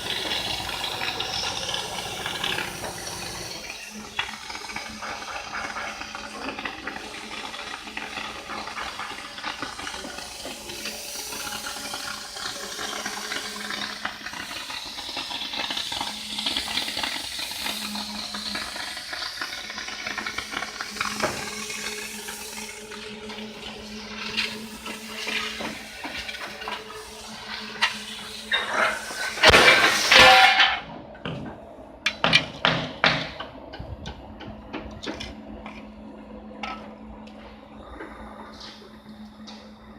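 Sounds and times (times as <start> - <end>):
plasma torch hissing: 0.0 - 30.8
faint steady hum: 20.5 - 39.9.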